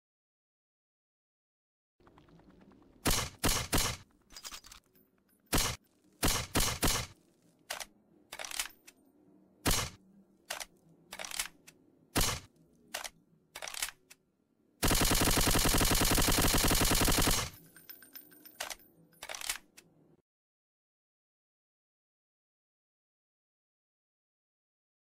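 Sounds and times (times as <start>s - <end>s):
machine pistol shots: 3.0s - 4.0s, 5.5s - 7.2s, 9.6s - 10.0s, 12.2s - 12.5s, 14.8s - 17.6s.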